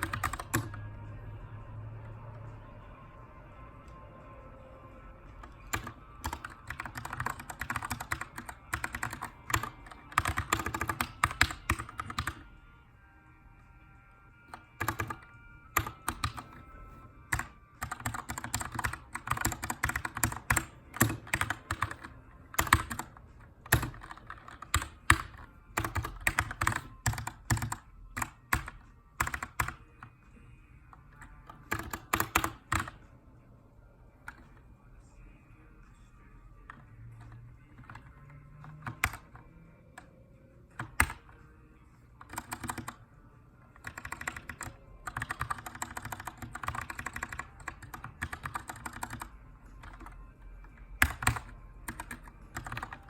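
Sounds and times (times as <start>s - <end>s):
mechanical keyboard typing: 0.0s - 0.8s, 5.4s - 12.5s, 14.5s - 16.7s, 17.3s - 30.1s, 31.0s - 33.0s, 36.7s - 40.1s, 40.8s - 41.4s, 42.2s - 43.0s, 43.8s - 50.2s, 50.9s - 53.0s
faint background music: 0.0s - 53.0s.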